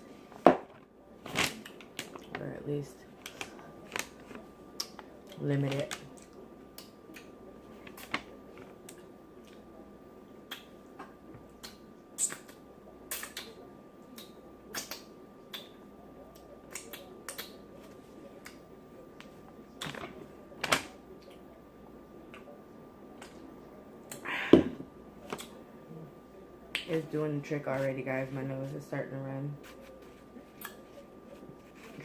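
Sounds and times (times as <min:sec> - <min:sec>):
wet lip smacks: 0:14.2 - 0:15.7.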